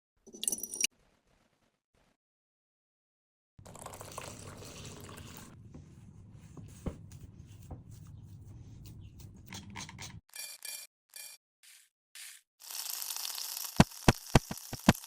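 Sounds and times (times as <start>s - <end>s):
liquid pouring or stirring: 3.6s - 5.6s.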